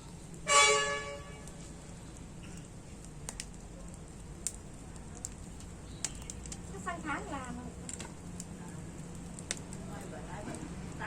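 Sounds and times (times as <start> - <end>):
loud pitched honk: 0.5 - 1.4
faint clicks: 4.4 - 6.7.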